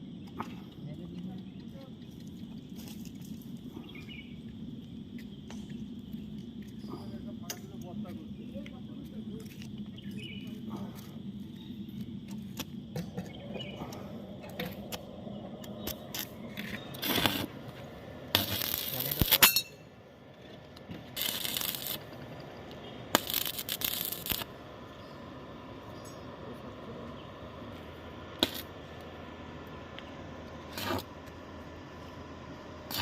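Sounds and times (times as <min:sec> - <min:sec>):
harsh metal scraping: 0:15.8 - 0:17.6, 0:30.7 - 0:31.1.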